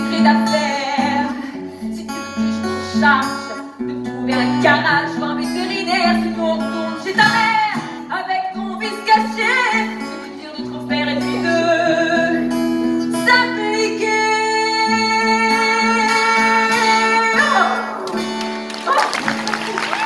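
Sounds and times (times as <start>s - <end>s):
acoustic guitar: 0.0s - 20.0s
applause: 18.0s - 20.0s.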